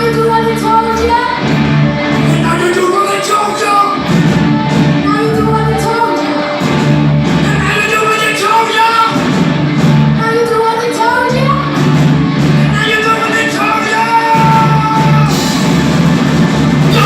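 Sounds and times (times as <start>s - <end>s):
person singing: 0.0s - 4.1s, 5.0s - 9.2s, 12.4s - 15.6s
rock band playing loudly: 0.0s - 17.0s.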